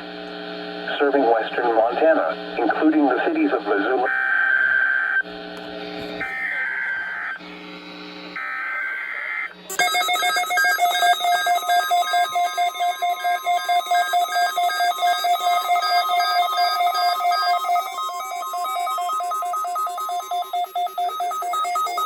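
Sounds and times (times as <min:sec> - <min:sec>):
stuttering electronic alert tones: 0:06.2 - 0:07.6, 0:08.4 - 0:22.0.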